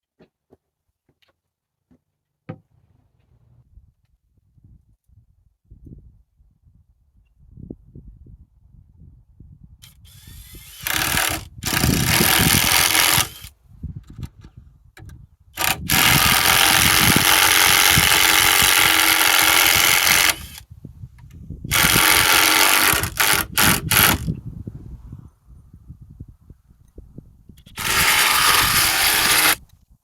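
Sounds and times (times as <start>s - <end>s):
power tool motor whine: 9.8s - 13.5s, 15.6s - 20.6s, 21.7s - 24.4s, 27.7s - 29.7s.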